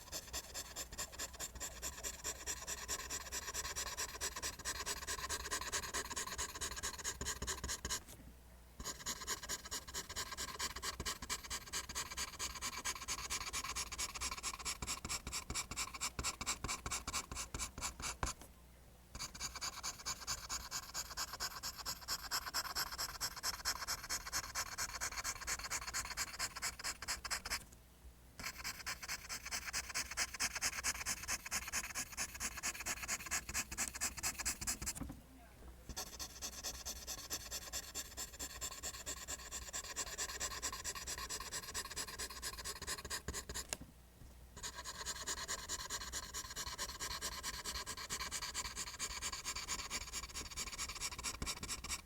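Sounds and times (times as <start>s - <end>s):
pencil scratching on paper: 0.0s - 8.2s, 8.8s - 18.4s, 19.2s - 27.6s, 28.4s - 35.0s, 35.9s - 43.8s, 44.6s - 52.0s.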